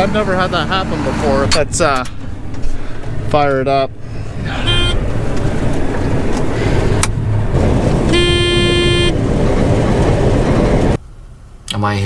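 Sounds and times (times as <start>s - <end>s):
combine engine running: 0.0s - 11.0s
short beep: 4.6s - 5.0s, 8.1s - 9.1s
steady horn-like tone: 4.6s - 5.1s, 8.1s - 9.2s.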